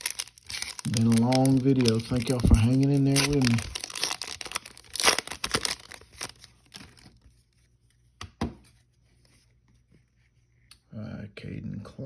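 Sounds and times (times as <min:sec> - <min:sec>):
wrapper crinkling being torn: 0:00.0 - 0:07.3.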